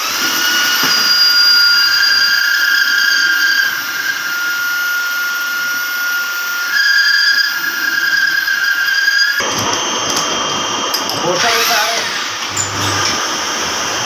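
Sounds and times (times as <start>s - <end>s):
power tool motor whining: 0.0s - 14.0s.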